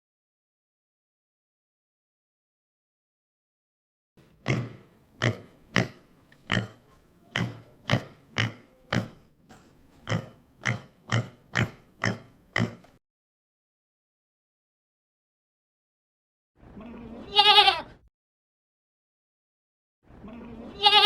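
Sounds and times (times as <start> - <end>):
farm animal grunting: 4.4 - 9.3, 10.0 - 13.0, 16.6 - 17.9, 20.1 - 21.0.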